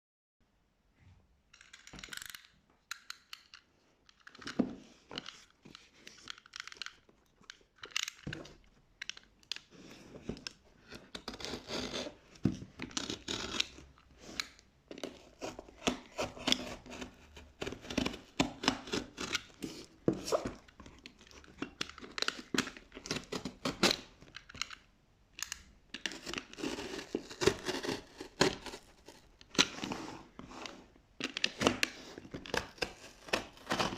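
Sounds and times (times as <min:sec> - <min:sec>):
plastic and cardboard crinkling: 0:26.0 - 0:33.9
tape tearing: 0:31.3 - 0:33.9.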